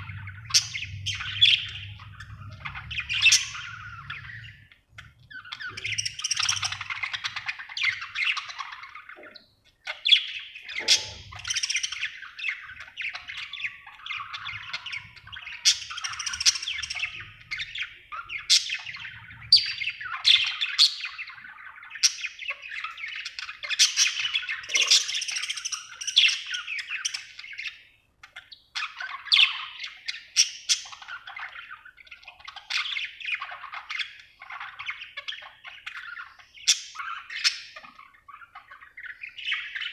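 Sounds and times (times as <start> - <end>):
budgerigar chattering and warbling: 5.3 - 27.6.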